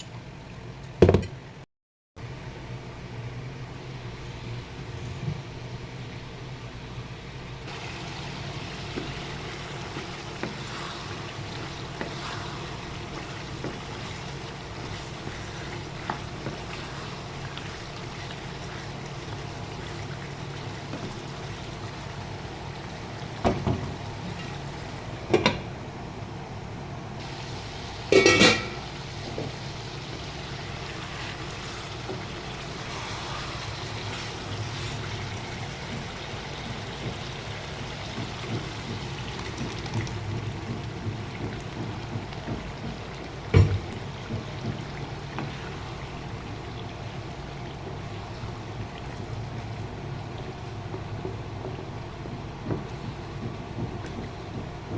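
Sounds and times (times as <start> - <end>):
gravy hissing in a pot: 7.7 - 25.1, 27.2 - 54.9
utensil clanking against pot: 25.3 - 25.7, 28.1 - 29.5.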